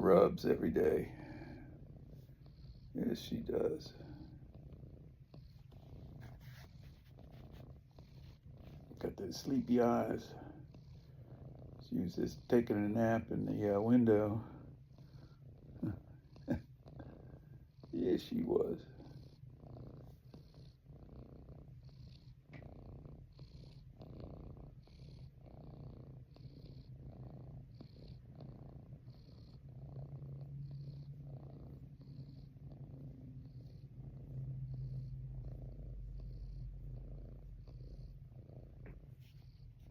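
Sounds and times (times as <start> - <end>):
cat purring: 0.0 - 39.9.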